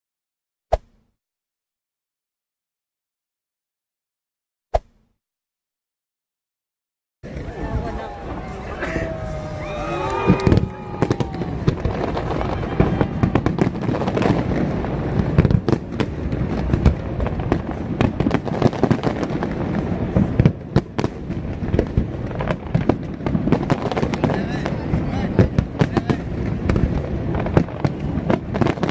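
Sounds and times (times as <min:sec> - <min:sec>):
fireworks bangs and crackles: 0:07.2 - 0:28.9.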